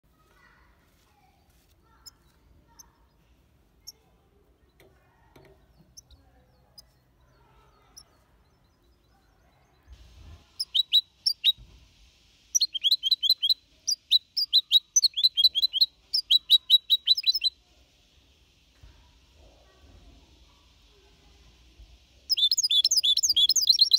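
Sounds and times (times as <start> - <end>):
goldfinch singing: 10.6 - 11.6, 12.5 - 17.6, 22.3 - 23.9.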